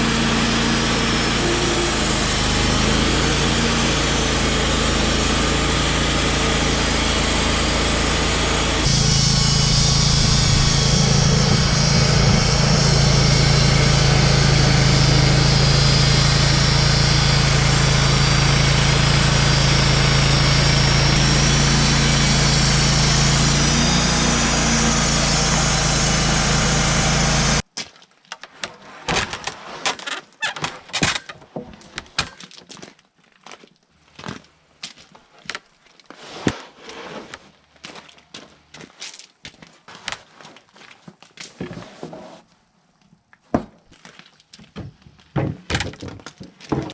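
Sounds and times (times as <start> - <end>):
sawmill engine and band saw drone: 0.0 - 27.6
knocks and clatter: 44.7 - 46.9.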